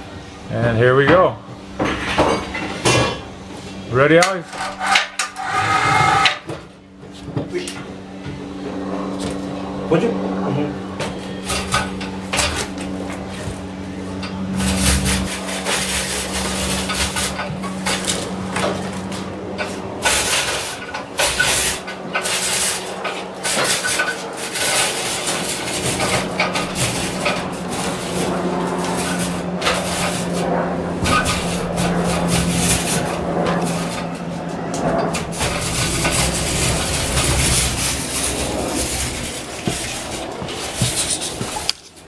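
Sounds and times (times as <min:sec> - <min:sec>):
electric hoist motor humming: 0:03.3 - 0:42.0
scraping against metal and wood: 0:04.3 - 0:06.6, 0:14.2 - 0:42.0.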